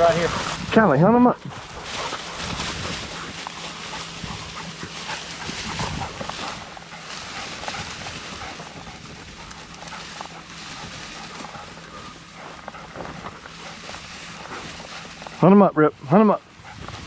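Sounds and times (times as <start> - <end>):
footsteps crunching through grass: 0.0 - 17.0.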